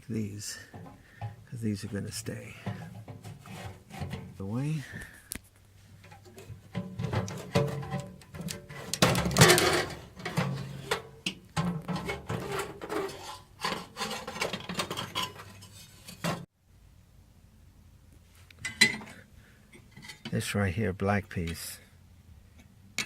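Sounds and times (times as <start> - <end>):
metal parts scraping and clicking: 6.0 - 11.2, 11.8 - 16.4.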